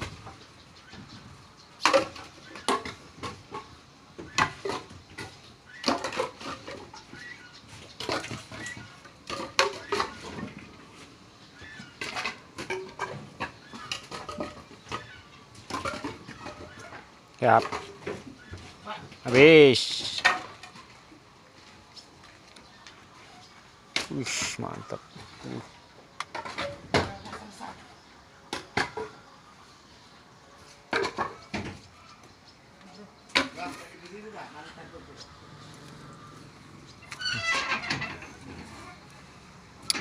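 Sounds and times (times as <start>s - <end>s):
wooden planks clattering: 1.8s - 21.0s, 26.3s - 27.5s, 37.0s - 39.1s
wooden knocks and clatters: 11.9s - 19.4s, 37.2s - 38.7s.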